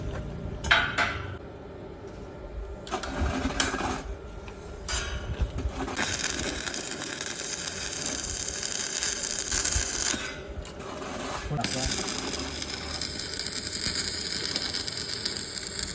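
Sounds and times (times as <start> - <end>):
workshop machine running: 0.0 - 15.9.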